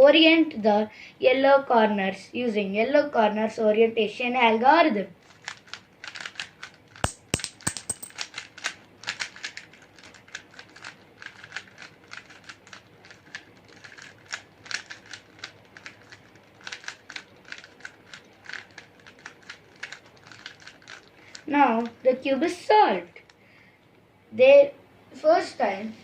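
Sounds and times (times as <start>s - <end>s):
puzzle cube clicking as turned: 5.3s - 21.4s.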